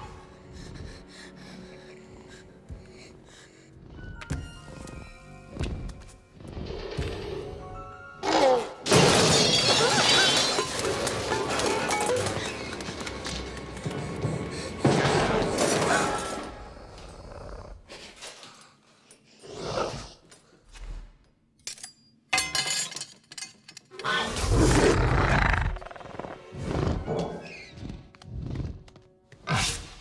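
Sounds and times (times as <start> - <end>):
film soundtrack music: 0.0 - 8.9, 10.8 - 17.4.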